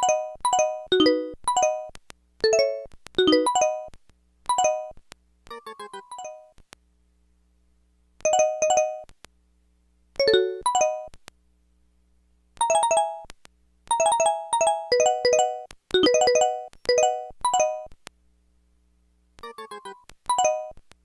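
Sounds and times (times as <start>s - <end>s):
polyphonic phone ringtone: 0.0s - 1.8s, 10.2s - 11.1s.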